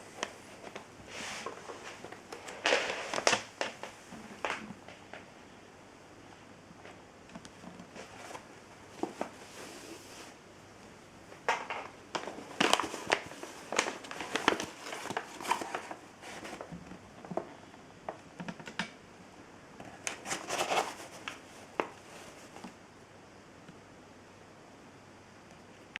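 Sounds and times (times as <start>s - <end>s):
clicks and crinkling of handling: 11.3s - 19.0s, 19.8s - 22.8s.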